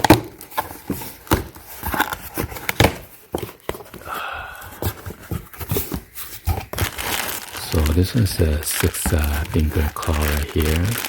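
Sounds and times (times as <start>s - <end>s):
packaging clicks and rustles: 0.0s - 11.0s
packaging scraping or peeling: 5.0s - 11.0s.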